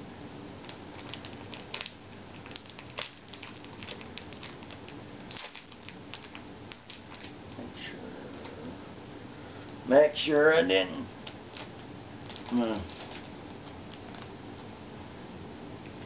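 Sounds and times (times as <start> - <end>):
foil wrapper crinkling: 0.6 - 7.4, 11.2 - 14.4.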